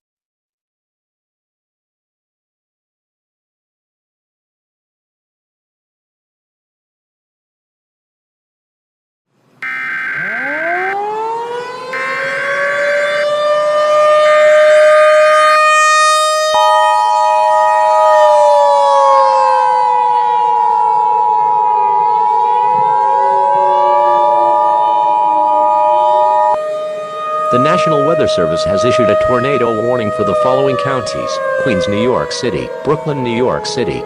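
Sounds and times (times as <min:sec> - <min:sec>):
two-tone attention signal: 0:09.6 - 0:11.0, 0:12.0 - 0:12.7, 0:16.6 - 0:16.9
emergency alert data bursts: 0:09.6 - 0:34.0
outdoor warning siren wailing: 0:09.6 - 0:34.0.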